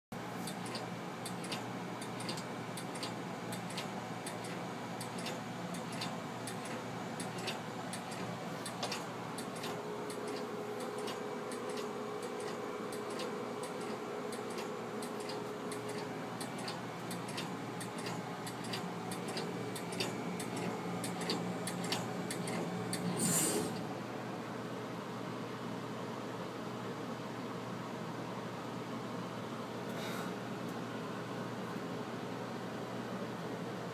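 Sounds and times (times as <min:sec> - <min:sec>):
steady hum: 0:00.2 - 0:33.9
ticking clicks: 0:00.5 - 0:23.0.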